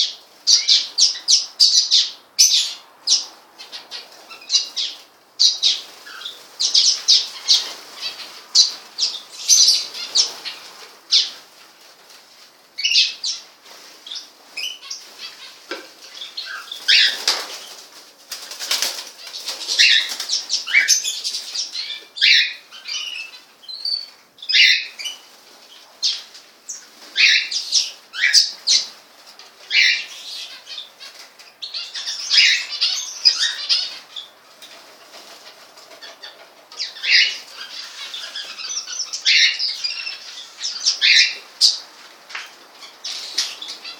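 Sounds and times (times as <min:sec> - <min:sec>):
birds chirping: 0:00.0 - 0:11.5, 0:12.6 - 0:43.9
wings fluttering: 0:13.7 - 0:21.7, 0:33.3 - 0:39.5.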